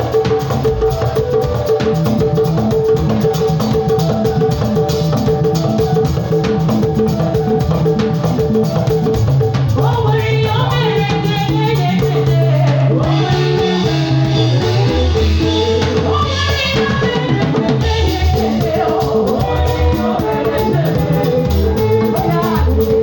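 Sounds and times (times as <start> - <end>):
drum kit: 0.0 - 23.0
guitar: 0.0 - 23.0
steady bass line: 8.4 - 23.0
person singing: 9.8 - 23.0.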